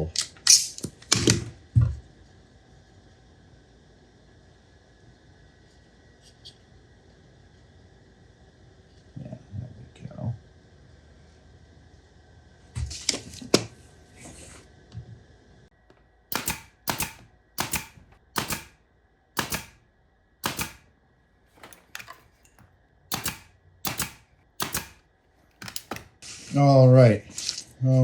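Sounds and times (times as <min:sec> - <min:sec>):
knocks: 0:16.3 - 0:18.7, 0:19.4 - 0:19.8, 0:20.4 - 0:20.8, 0:21.6 - 0:26.1
sharp mechanical clicks: 0:16.3 - 0:18.8, 0:19.4 - 0:19.8, 0:20.4 - 0:20.9, 0:21.6 - 0:26.1.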